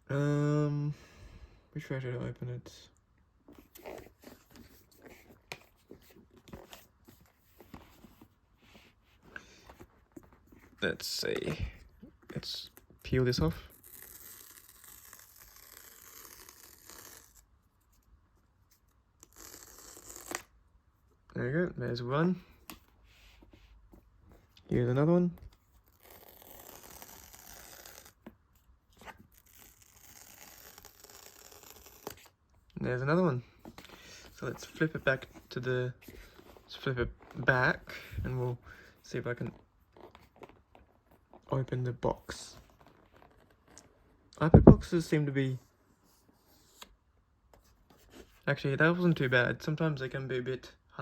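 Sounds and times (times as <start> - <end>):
paper strip tearing: 13.7 - 17.5, 19.2 - 20.5, 25.9 - 28.2, 29.0 - 32.3.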